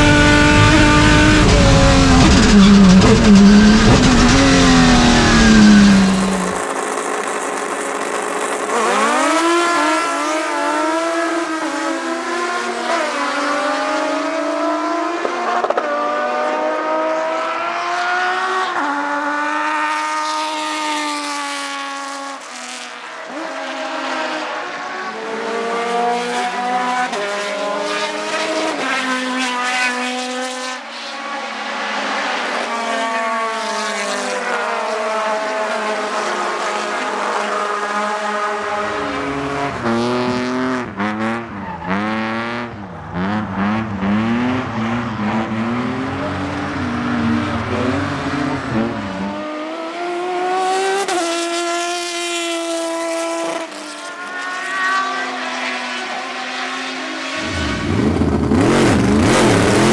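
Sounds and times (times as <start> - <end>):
racing car engine revving: 0.0 - 59.9.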